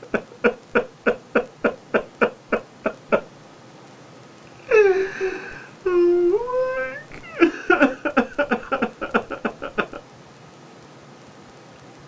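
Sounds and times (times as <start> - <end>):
man sobbing: 0.0 - 3.3, 4.6 - 10.0
man wailing in grief: 4.6 - 10.0.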